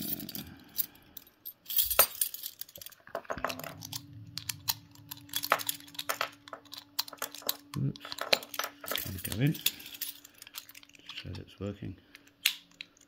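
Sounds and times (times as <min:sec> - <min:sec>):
metal lock picks clicking: 0:01.9 - 0:11.4.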